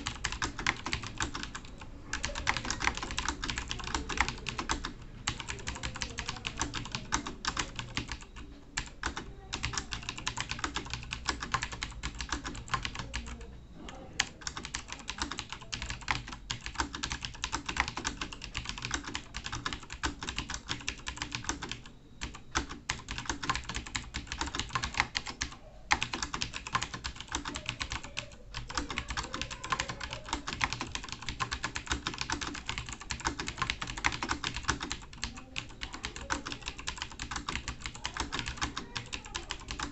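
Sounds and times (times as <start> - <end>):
fast typing on a keyboard: 0.0 - 13.6, 14.2 - 39.9.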